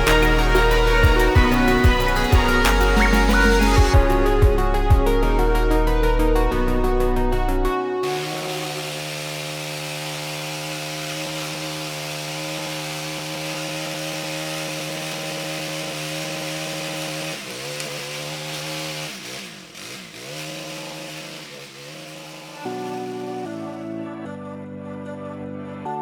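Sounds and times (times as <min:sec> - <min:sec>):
chainsaw cutting wood: 0:00.0 - 0:03.8, 0:08.0 - 0:23.8.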